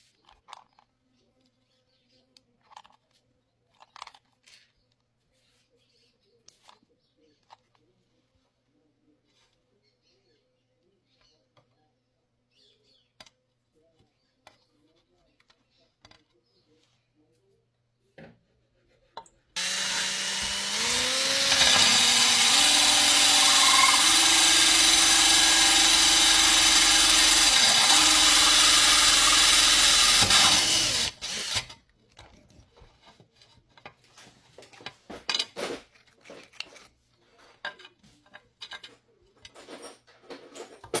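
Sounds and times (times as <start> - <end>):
electric drill motor running: 19.6 - 31.8.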